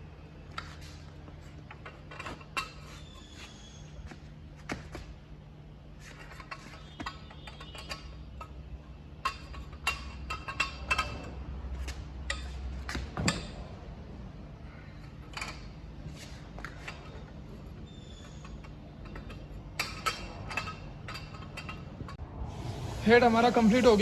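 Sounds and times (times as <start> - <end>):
tools and metal parts clinking: 0.5 - 3.8, 6.0 - 13.7, 14.8 - 22.2.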